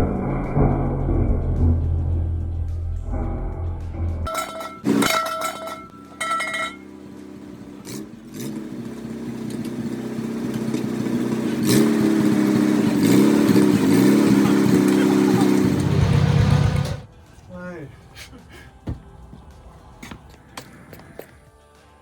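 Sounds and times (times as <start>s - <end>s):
tractor engine running: 0.0s - 17.4s.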